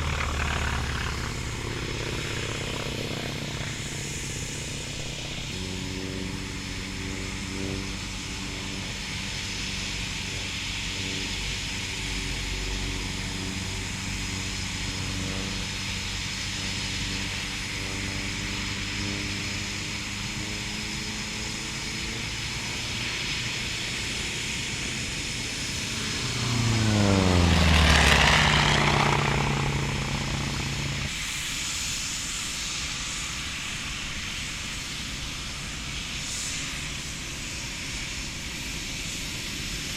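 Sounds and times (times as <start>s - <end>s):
jet passing close by: 0.0s - 31.4s
jet fighter engines: 0.0s - 39.9s.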